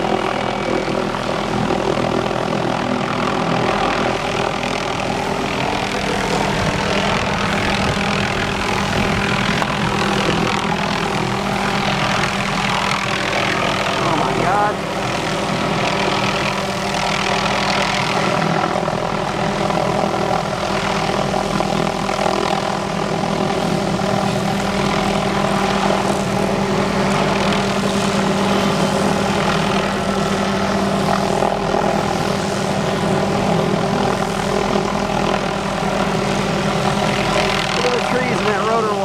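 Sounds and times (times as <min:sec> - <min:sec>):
helicopter drone: 0:00.0 - 0:39.0.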